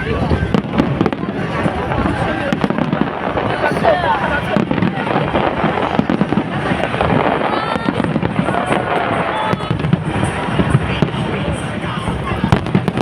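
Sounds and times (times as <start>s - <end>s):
fireworks popping and crackling: 0.0s - 13.0s.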